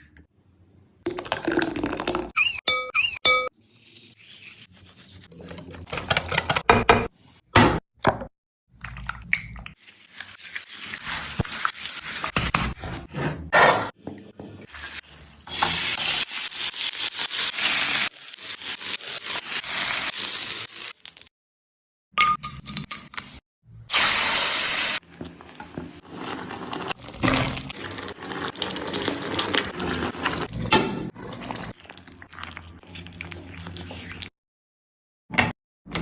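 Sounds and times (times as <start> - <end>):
scraping and rubbing strokes: 3.6 - 5.4.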